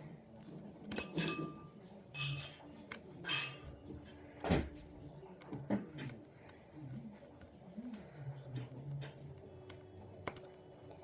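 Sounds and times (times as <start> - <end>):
metal tools clinking on phone: 0.8 - 4.2.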